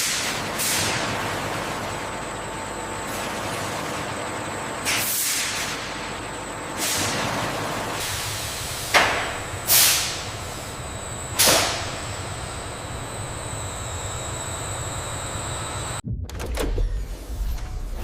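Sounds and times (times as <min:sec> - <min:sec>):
industrial machinery humming: 0:00.0 - 0:16.0
pneumatic air hisses: 0:06.8 - 0:07.2, 0:08.0 - 0:13.3
faint high whine: 0:08.1 - 0:16.0.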